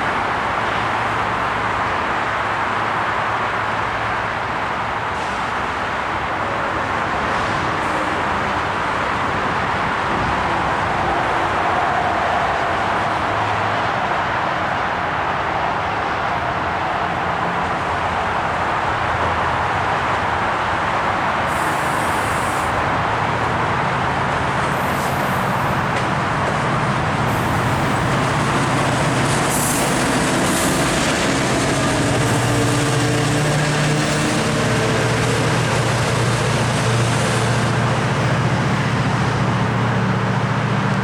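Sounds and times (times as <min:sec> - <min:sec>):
diesel train engine drone: 0:00.0 - 0:41.0
short high hisses: 0:21.5 - 0:22.8.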